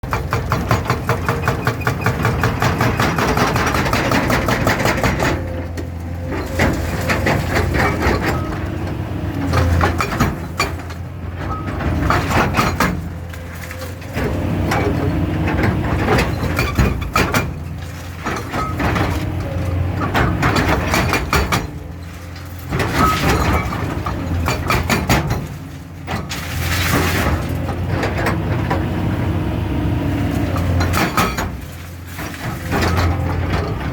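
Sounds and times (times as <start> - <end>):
hydraulic breaker hammering: 0.0 - 8.6, 9.5 - 28.7, 30.5 - 33.9
diesel engine running: 0.0 - 33.9.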